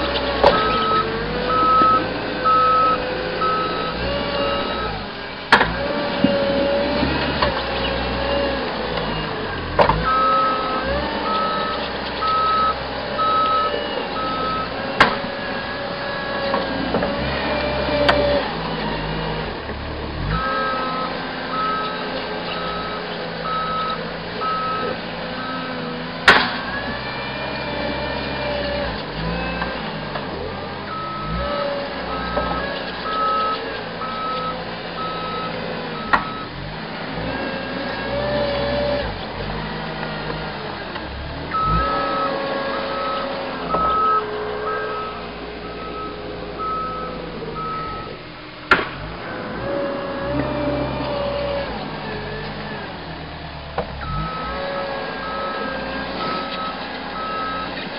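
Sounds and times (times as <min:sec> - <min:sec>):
diesel engine running: 0:00.0 - 0:57.9
backup alarm beeping: 0:00.5 - 0:05.1, 0:10.0 - 0:14.8, 0:20.3 - 0:25.8, 0:30.9 - 0:36.6, 0:41.5 - 0:48.2, 0:54.0 - 0:57.8.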